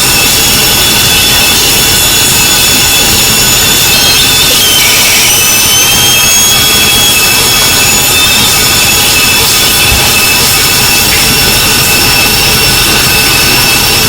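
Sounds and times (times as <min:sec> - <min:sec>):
high-pitched water heater whistle: 0:00.0 - 0:14.0
shower spray rushing: 0:00.0 - 0:14.0.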